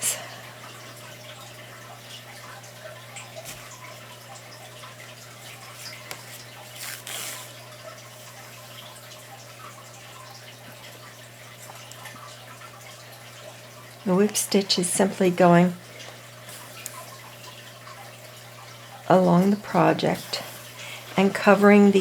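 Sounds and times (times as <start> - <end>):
needle scraping plastic canvas: 5.8 - 7.6.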